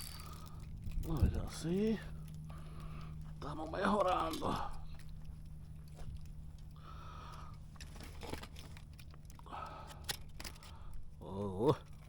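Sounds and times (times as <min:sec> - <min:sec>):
fishing reel clicks: 0:00.0 - 0:01.1
fishing reel whirring: 0:00.0 - 0:01.1
steady low hum: 0:00.0 - 0:12.0.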